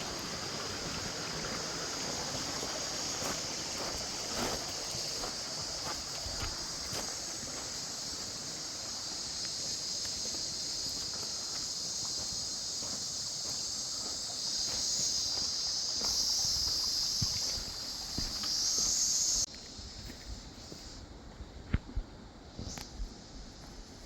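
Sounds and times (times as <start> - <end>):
high-pitched outdoor hiss: 0.0 - 24.0.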